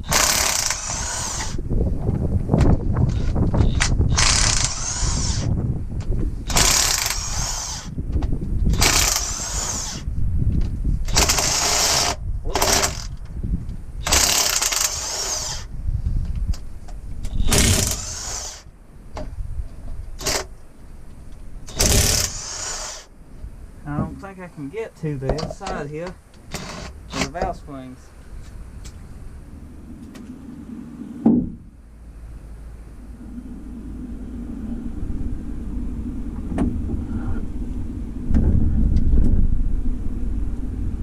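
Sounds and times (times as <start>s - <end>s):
power wrench spinning fasteners: 0.0s - 1.6s, 3.1s - 5.5s, 6.5s - 7.9s, 8.7s - 10.1s, 11.1s - 13.2s, 14.0s - 15.7s, 17.3s - 18.7s, 21.7s - 23.1s
continuous low rumble: 0.0s - 41.0s.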